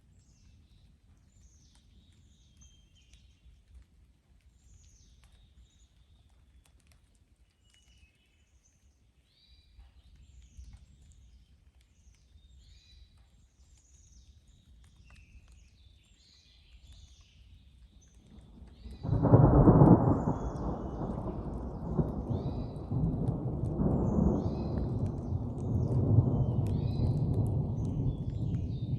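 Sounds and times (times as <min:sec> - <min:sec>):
birds chirping: 0:13.9 - 0:28.9
thunderclap rumbling: 0:18.4 - 0:28.9.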